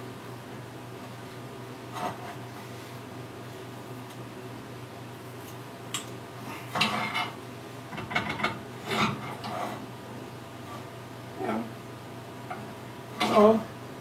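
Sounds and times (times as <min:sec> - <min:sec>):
metallic clanks and scrapes: 0:06.7 - 0:07.4, 0:08.0 - 0:09.8.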